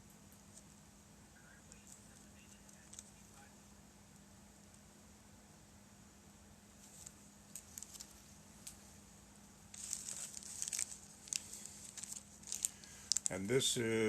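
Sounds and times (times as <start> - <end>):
packaging crinkling and rustling: 6.8 - 8.8, 9.7 - 14.0.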